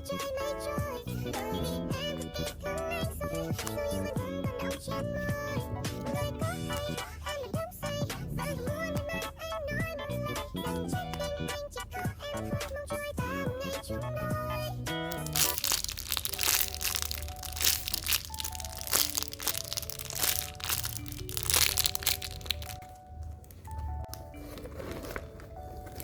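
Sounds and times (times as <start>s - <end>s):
person singing: 0.0s - 22.8s
soft background music: 0.0s - 26.0s
packaging crinkling: 15.1s - 26.0s.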